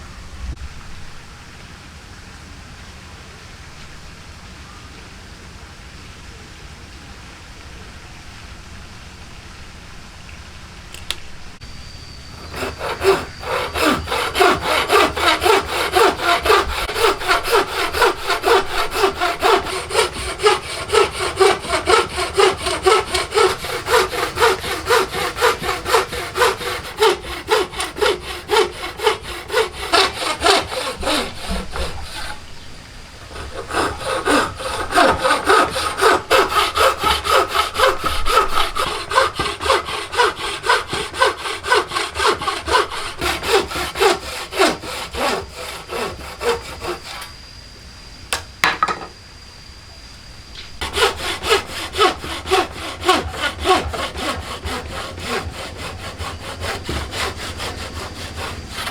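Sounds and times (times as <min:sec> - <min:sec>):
hand saw cutting wood: 0:12.3 - 0:47.3, 0:50.8 - 0:58.9.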